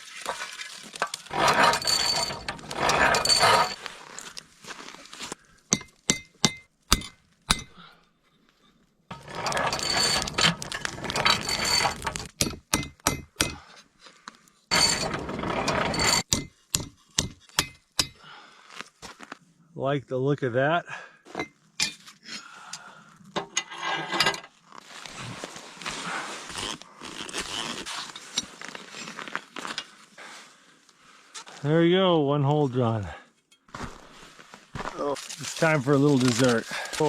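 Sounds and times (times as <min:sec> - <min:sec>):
metal-on-metal scraping: 0:00.2 - 0:03.8, 0:09.1 - 0:13.6, 0:14.7 - 0:18.2, 0:23.4 - 0:24.5.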